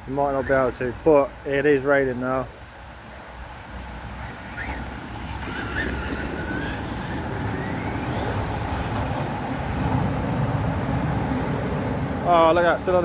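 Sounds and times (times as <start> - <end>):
road traffic rumble: 0.0 - 13.0
rc truck motor whine: 4.0 - 9.7.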